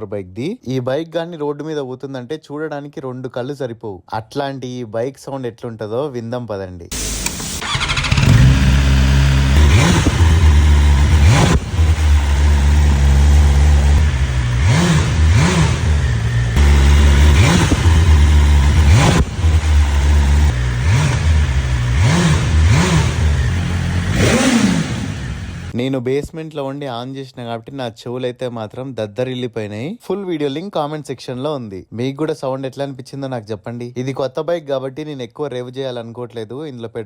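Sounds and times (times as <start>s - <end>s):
motorcycle engine revving: 7.0s - 25.8s.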